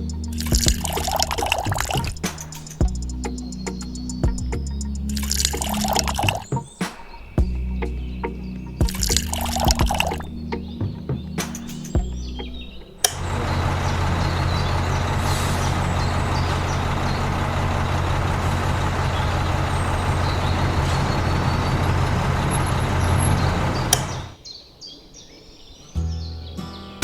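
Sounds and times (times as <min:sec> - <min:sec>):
machine humming and hissing: 0:07.4 - 0:24.4.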